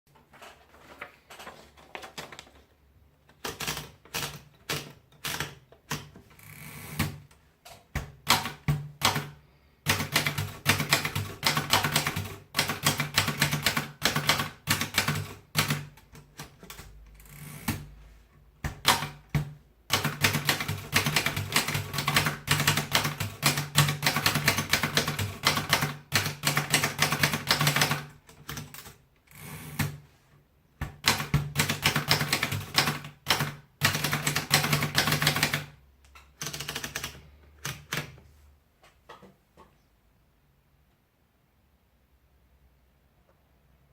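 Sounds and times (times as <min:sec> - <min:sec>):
typewriter keys clicking: 0:03.3 - 0:06.2, 0:09.9 - 0:17.0, 0:18.6 - 0:29.0, 0:30.9 - 0:38.2.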